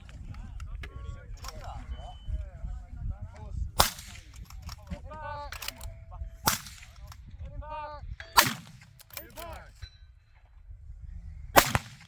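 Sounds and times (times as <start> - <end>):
rifle shots cracking: 3.8 - 4.9, 5.5 - 7.2, 8.4 - 9.6, 11.6 - 12.0.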